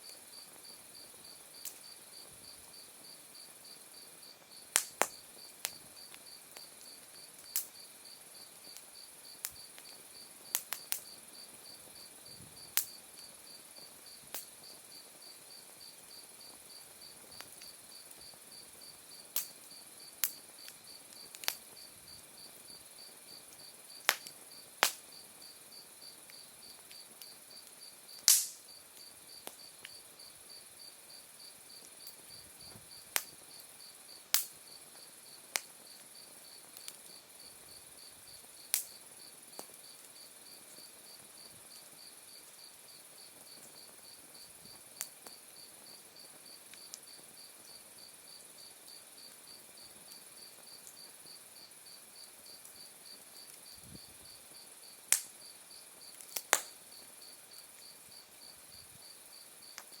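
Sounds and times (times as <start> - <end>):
crickets chirping: 0.0 - 60.0
wood fire popping and snapping: 4.6 - 7.8, 8.4 - 11.6, 14.3 - 14.8, 16.5 - 18.4, 19.2 - 21.9, 23.3 - 25.2, 26.3 - 30.0, 31.8 - 33.7, 34.3 - 34.6, 35.5 - 37.1, 38.7 - 40.8, 55.1 - 55.4, 56.1 - 57.1, 59.7 - 60.0.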